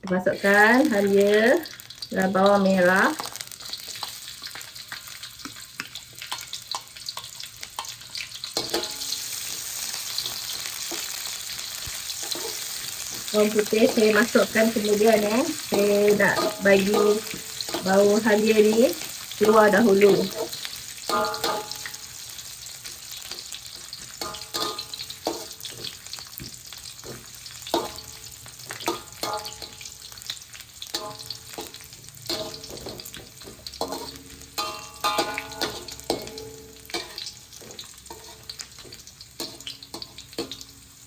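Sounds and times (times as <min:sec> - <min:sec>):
ginger and shallots sizzling in oil: 0:00.0 - 0:41.0
spatula scraping a pan: 0:07.8 - 0:22.2, 0:22.8 - 0:40.7.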